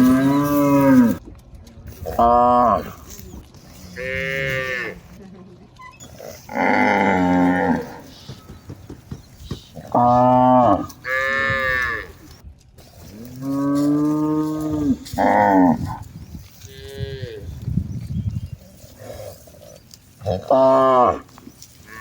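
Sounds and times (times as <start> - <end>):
cows mooing: 0.0 - 1.2, 2.0 - 3.1, 3.7 - 5.2, 6.0 - 8.2, 9.8 - 12.4, 13.0 - 17.6, 18.8 - 22.0.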